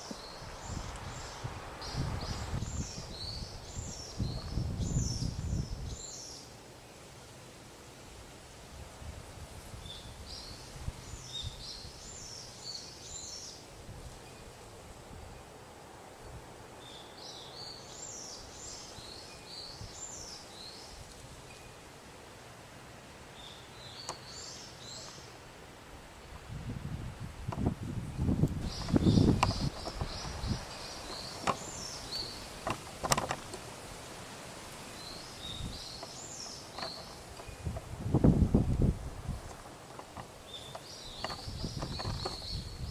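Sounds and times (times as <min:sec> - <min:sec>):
songbird singing: 0:00.0 - 0:07.1, 0:09.8 - 0:15.2, 0:16.2 - 0:21.8, 0:23.2 - 0:25.4, 0:26.1 - 0:34.1, 0:34.7 - 0:42.9
outdoor background noise: 0:00.0 - 0:42.9
bird singing: 0:23.4 - 0:25.4, 0:28.2 - 0:33.4, 0:34.9 - 0:37.8, 0:39.5 - 0:42.9.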